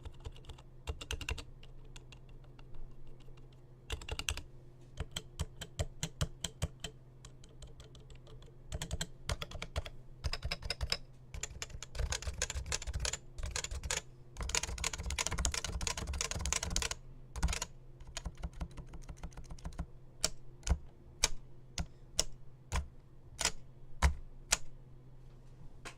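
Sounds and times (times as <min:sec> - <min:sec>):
typing on keyboard: 0:00.0 - 0:04.4, 0:05.0 - 0:24.6.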